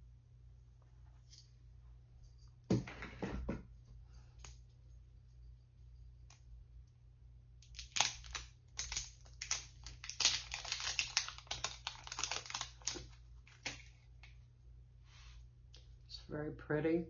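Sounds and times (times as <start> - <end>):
packaging crackling as it is opened: 7.6 - 14.3.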